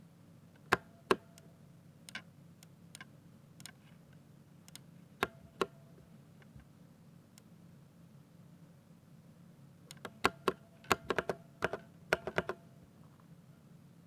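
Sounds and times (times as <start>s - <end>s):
mechanical keyboard key presses: 10.0s - 12.6s.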